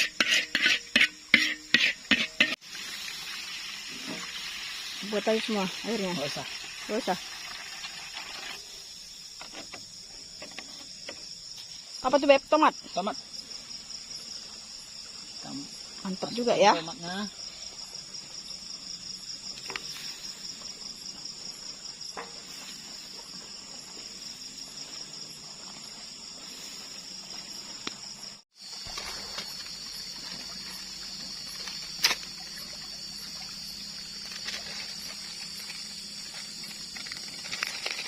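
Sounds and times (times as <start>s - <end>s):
crickets trilling: 0.0s - 38.0s
water trickling: 2.6s - 8.7s, 29.9s - 35.6s.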